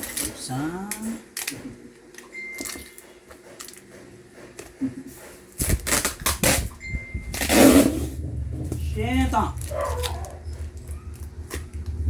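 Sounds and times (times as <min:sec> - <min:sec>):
packaging rustling and tearing: 0:05.6 - 0:06.7, 0:09.6 - 0:11.8
packaging clicks: 0:09.6 - 0:11.8.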